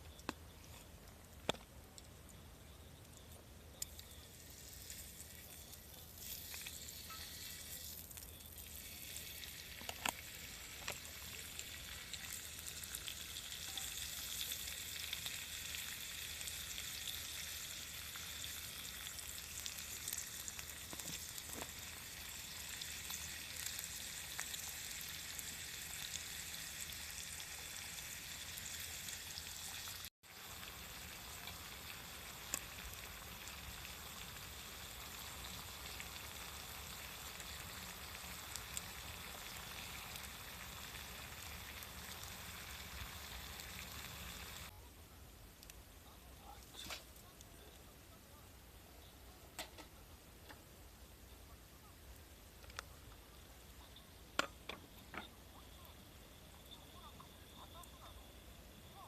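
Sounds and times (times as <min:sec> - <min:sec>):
food sizzling and frying: 0:03.8 - 0:44.7.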